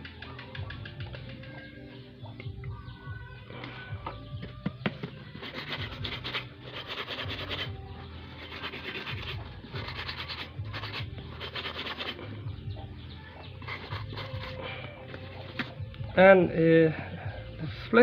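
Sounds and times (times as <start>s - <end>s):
scratchy scrubbing strokes: 5.4s - 12.2s, 13.6s - 14.7s.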